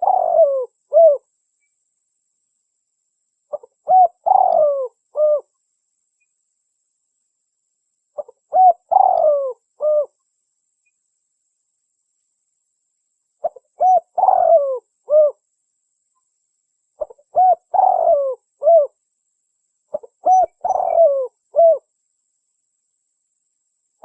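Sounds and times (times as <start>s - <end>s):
dove cooing: 0.0s - 1.2s, 3.5s - 5.5s, 8.2s - 10.2s, 13.4s - 15.4s, 17.0s - 19.0s, 19.9s - 21.9s.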